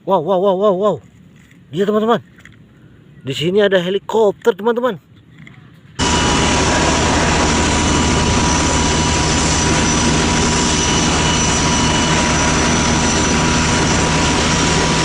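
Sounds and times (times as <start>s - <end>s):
helicopter engine and rotor: 6.0s - 15.0s
high whine: 6.0s - 15.0s.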